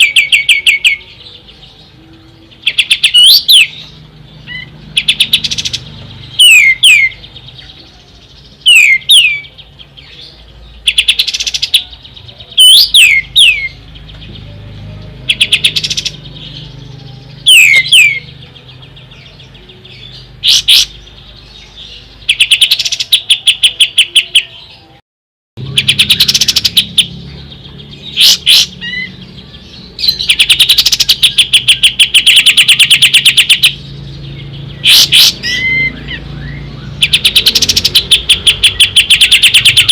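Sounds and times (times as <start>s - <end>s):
bird whistling and trilling: 0.0s - 1.2s, 2.6s - 7.7s, 8.6s - 10.2s, 10.8s - 12.0s, 12.6s - 13.8s, 15.3s - 16.6s, 17.4s - 18.4s, 19.2s - 21.0s, 21.7s - 24.7s, 25.7s - 39.9s.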